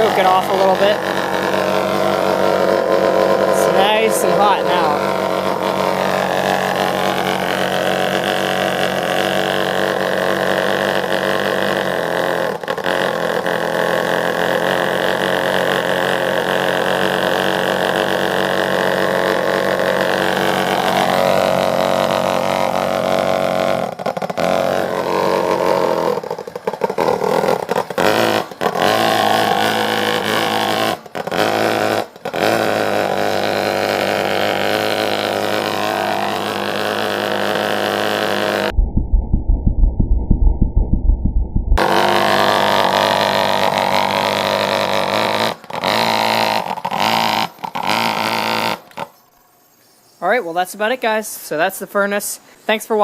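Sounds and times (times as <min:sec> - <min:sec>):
furnace droning buzz: 0:00.0 - 0:23.9.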